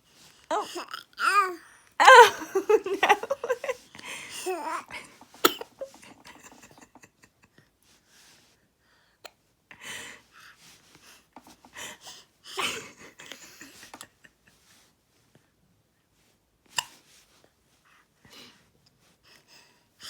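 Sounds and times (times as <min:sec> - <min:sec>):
baby hiccuping: 0:05.4 - 0:05.8.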